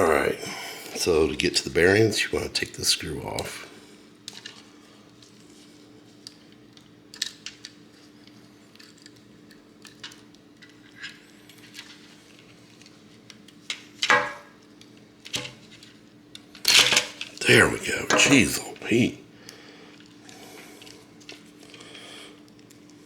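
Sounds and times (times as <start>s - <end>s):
steady low hum: 0.0s - 6.9s, 11.0s - 23.0s
handling noise: 14.0s - 14.6s.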